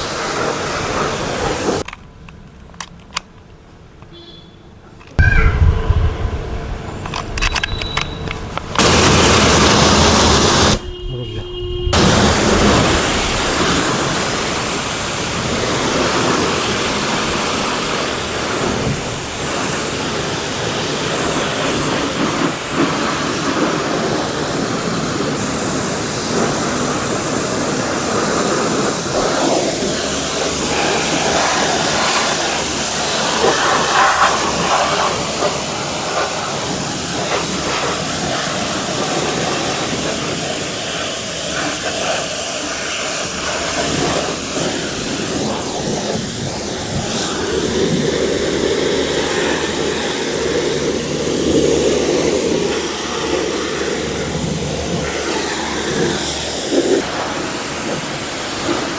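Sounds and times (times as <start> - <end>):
pressure washer spraying car: 0.0 - 1.9, 6.2 - 58.9.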